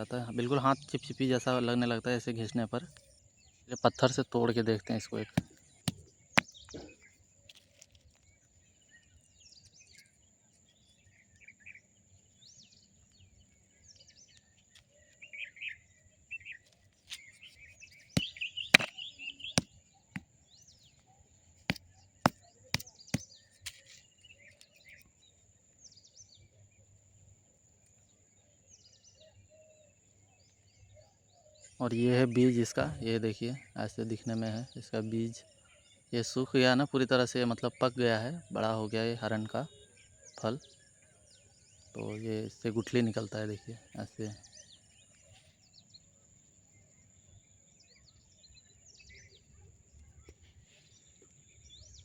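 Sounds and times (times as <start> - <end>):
birds chirping: 0.0 - 26.7, 28.3 - 52.0
stone knocking on dried fruit: 5.1 - 6.9, 18.2 - 20.3.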